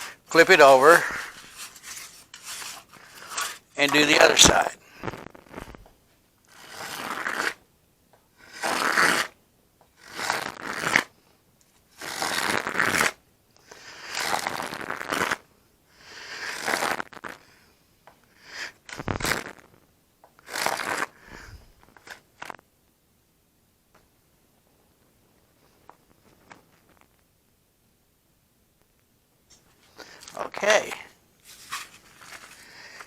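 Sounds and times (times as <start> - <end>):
razor plane scraping wood: 0.0 - 4.3, 6.5 - 7.6, 8.4 - 9.3, 10.0 - 11.0.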